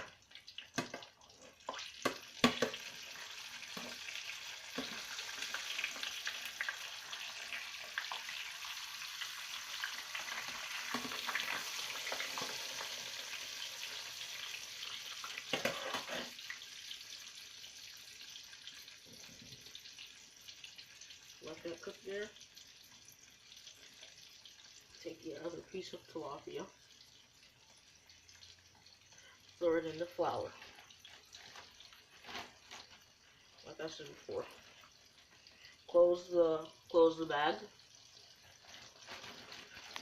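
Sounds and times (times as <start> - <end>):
fish sizzling in hot oil: 0.0 - 40.0
pops and clatters: 0.3 - 2.8.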